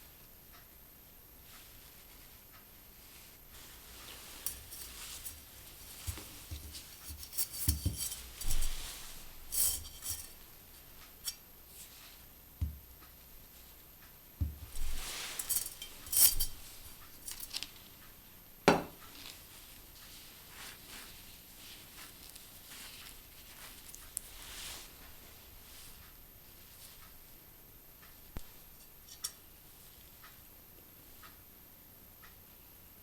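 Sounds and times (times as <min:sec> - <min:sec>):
metal wire clinking against a pot: 0:03.6 - 0:11.4, 0:14.6 - 0:17.8, 0:28.5 - 0:29.5.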